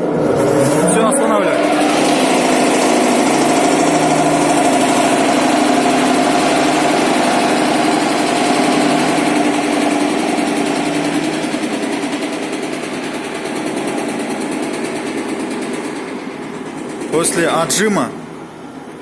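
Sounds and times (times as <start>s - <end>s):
centrifuge spinning with rhythmic knocking: 0.0s - 19.0s.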